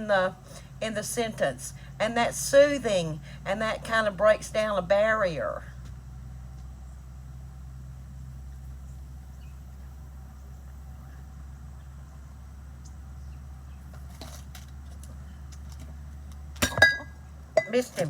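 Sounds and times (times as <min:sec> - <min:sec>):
low machine hum: 0:00.0 - 0:18.0.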